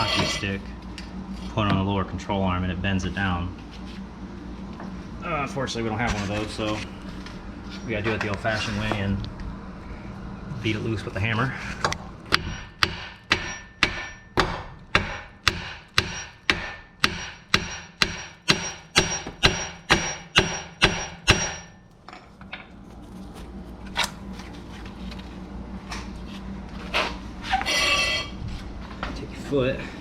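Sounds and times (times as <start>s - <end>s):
hammer striking metal: 12.3s - 21.8s.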